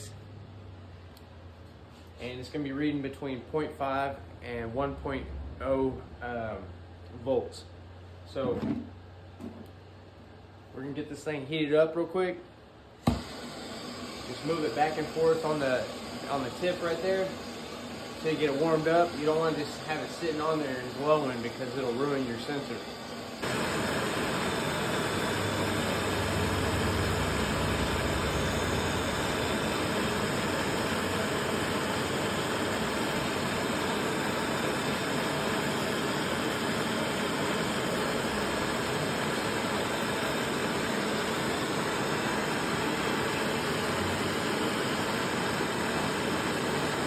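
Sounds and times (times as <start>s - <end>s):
gas torch hissing: 13.0s - 47.0s.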